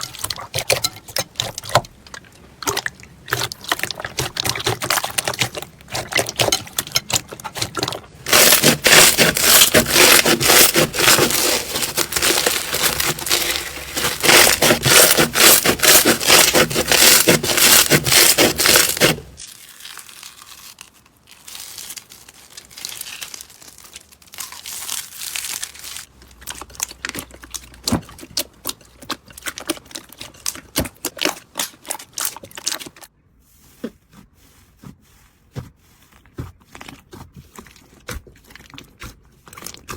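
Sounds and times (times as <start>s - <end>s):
slime crackling and popping: 8.3s - 28.4s.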